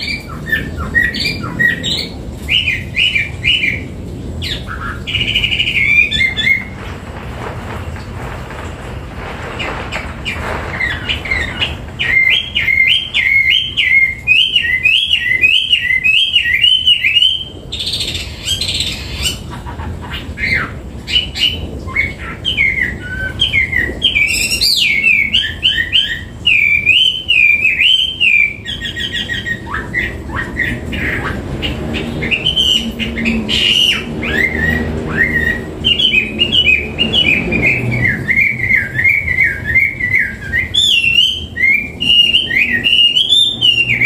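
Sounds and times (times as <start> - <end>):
bird singing whistled phrases: 10.8 - 19.4, 32.2 - 44.0.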